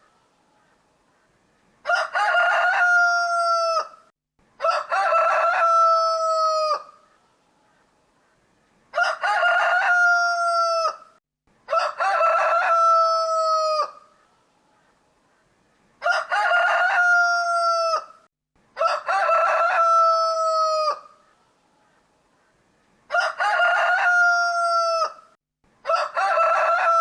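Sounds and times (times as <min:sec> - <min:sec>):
rooster crowing: 0:01.8 - 0:07.0, 0:08.9 - 0:14.0, 0:16.0 - 0:18.2, 0:18.8 - 0:21.2, 0:23.1 - 0:27.0.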